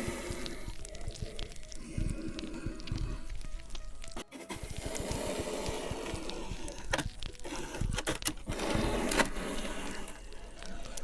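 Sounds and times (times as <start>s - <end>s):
sharp clicks and pops: 0.0s - 11.0s
soldering iron melting styrofoam: 0.0s - 11.0s.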